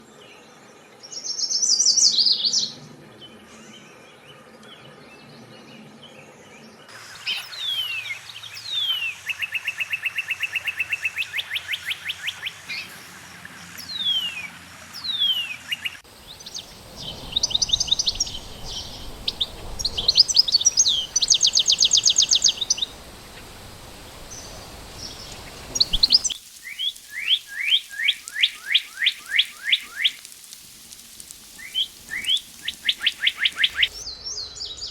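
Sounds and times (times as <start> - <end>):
warbled birdsong: 0.0 - 34.9
bird trills: 7.1 - 13.1, 25.7 - 30.2, 31.5 - 34.9.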